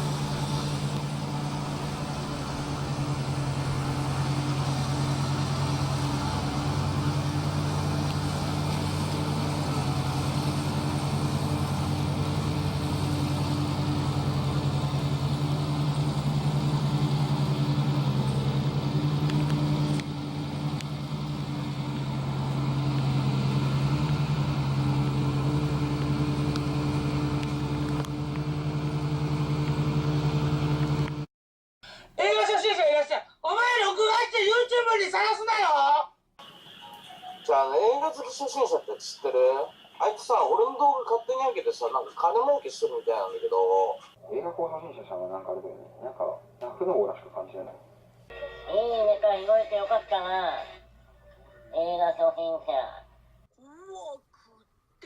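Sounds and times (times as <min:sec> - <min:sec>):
harvester engine droning: 0:00.0 - 0:31.3, 0:36.4 - 0:53.5.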